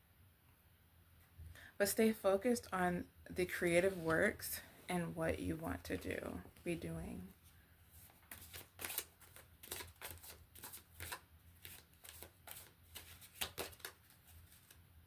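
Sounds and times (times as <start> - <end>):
cards being shuffled by hand: 8.0 - 14.8.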